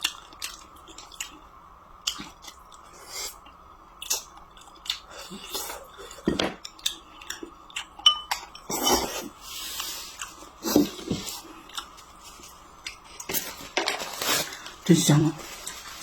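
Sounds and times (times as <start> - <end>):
chewing or slurping: 6.8 - 13.4
utensils clinking against dishes: 8.0 - 9.3.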